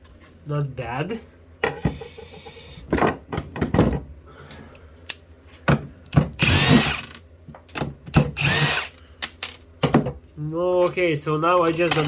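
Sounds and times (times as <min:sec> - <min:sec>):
oscillating multi-tool motor: 0:06.4 - 0:07.1, 0:08.3 - 0:08.9.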